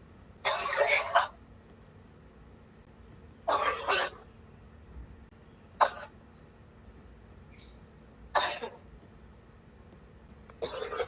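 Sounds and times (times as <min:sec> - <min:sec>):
person coughing hard: 0:10.6 - 0:11.0.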